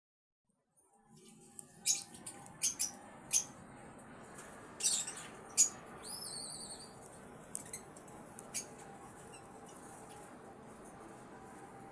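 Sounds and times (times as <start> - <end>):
birds chirping: 1.8 - 3.6, 4.7 - 10.1
bird warbling whistle: 4.8 - 7.0.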